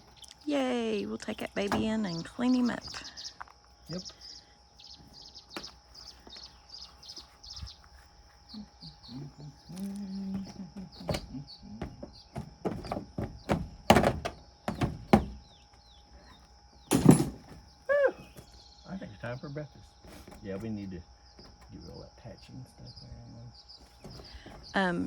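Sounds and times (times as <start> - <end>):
bird chirping: 0.0 - 25.0
hard objects knocking and clunking: 1.4 - 3.1, 10.3 - 15.6, 16.9 - 17.7, 24.0 - 25.0.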